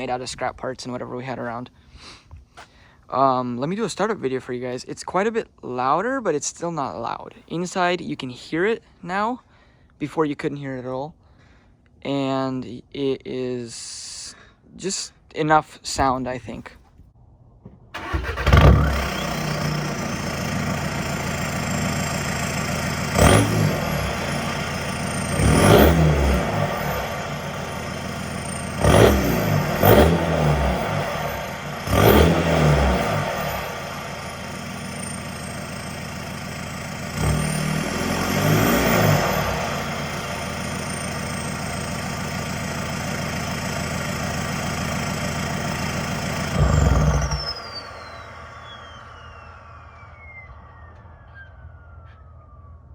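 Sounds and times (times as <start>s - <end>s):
diesel engine idling and revving: 18.0s - 51.2s
turbo whistle: 46.6s - 52.3s.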